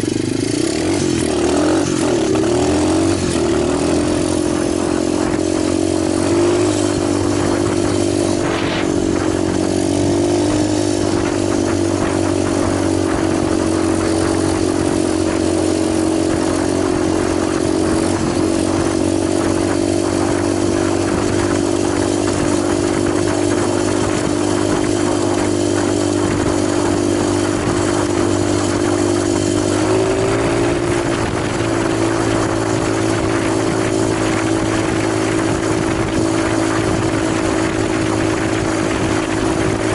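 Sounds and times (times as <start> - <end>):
motorbike engine idling: 0.0 - 26.6.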